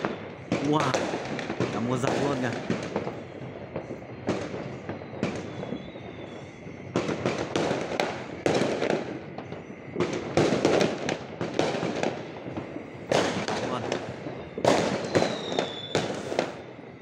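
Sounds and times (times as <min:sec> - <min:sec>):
fireworks crackling: 0:00.0 - 0:17.0
continuous rumble: 0:06.7 - 0:17.0.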